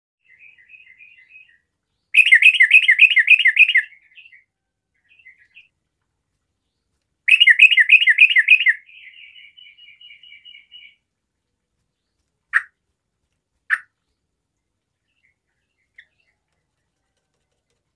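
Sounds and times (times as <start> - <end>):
bulbul singing: 0.2 - 5.7, 7.3 - 11.0.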